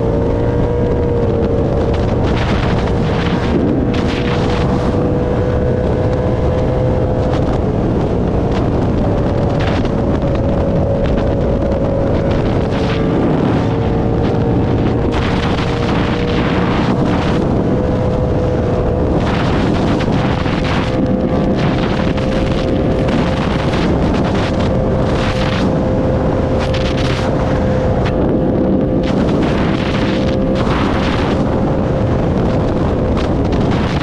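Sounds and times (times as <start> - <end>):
motorcycle engine running: 0.0 - 34.0
wind noise on microphone: 0.0 - 34.0.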